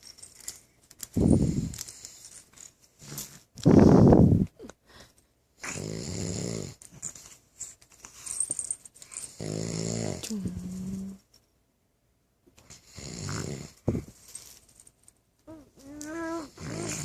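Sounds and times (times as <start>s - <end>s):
man snoring: 5.7s - 6.8s, 9.4s - 10.2s.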